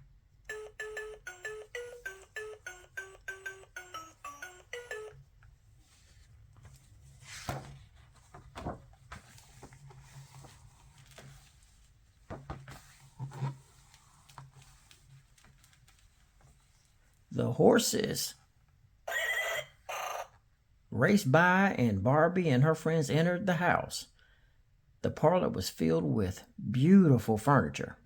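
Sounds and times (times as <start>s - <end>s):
electronic beeping jingle: 0.5s - 5.2s.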